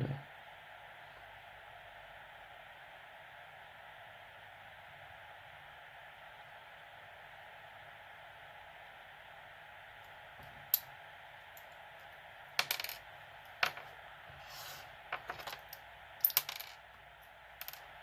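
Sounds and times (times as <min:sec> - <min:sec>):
background hiss: 0:00.0 - 0:18.0.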